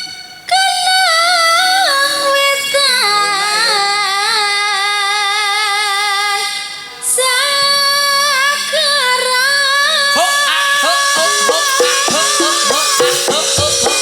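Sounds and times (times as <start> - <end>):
woman singing long held notes: 0.5 - 14.0
accompanying music: 6.9 - 14.0.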